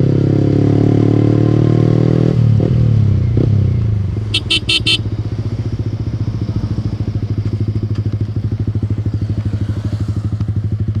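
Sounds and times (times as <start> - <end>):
motorcycle idling: 4.1 - 11.0.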